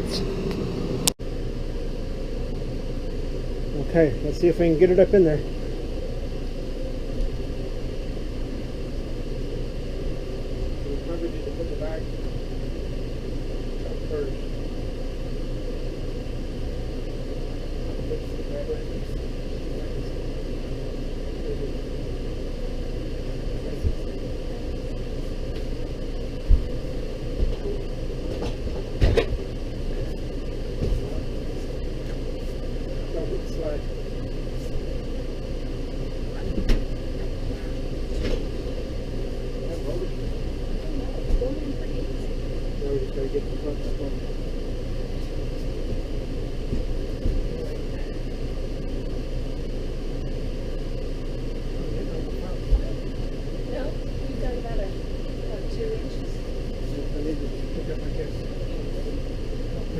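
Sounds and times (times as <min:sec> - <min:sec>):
steady low rumble: 0:00.0 - 0:59.9.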